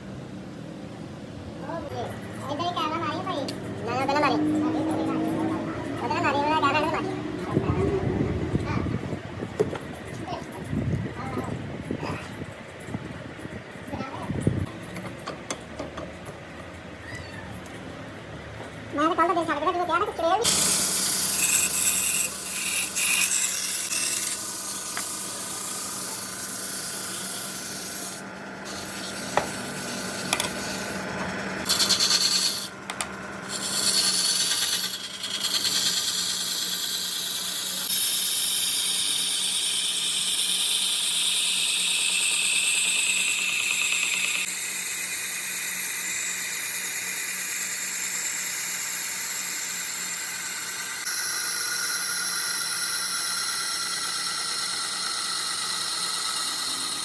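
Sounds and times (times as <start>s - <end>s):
motor hum: 0.0s - 57.0s
wood rasping on a lathe: 20.4s - 44.9s.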